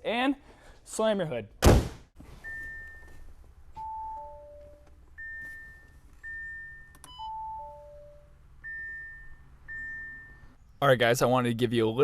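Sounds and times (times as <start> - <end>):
low steady hum: 2.3 - 10.8.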